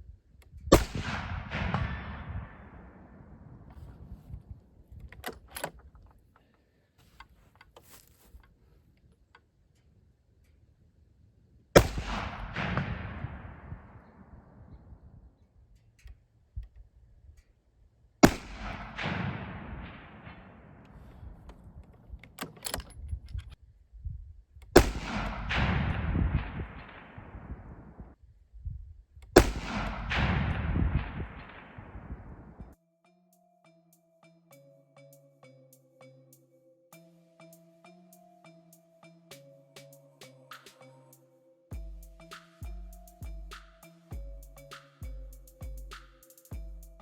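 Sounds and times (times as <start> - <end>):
rifle shots: 0.7 - 3.9, 11.8 - 14.9, 18.2 - 21.4, 24.8 - 28.1, 29.4 - 32.7
rolling echo: 0.7 - 4.2, 11.8 - 15.2, 18.2 - 22.1, 24.8 - 28.2, 29.4 - 32.8.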